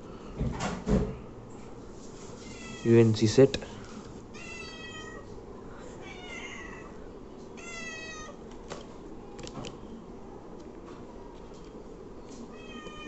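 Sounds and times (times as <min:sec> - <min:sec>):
cat meowing: 0:02.4 - 0:02.9, 0:04.3 - 0:05.3, 0:06.0 - 0:07.0, 0:07.6 - 0:08.4, 0:12.5 - 0:13.0.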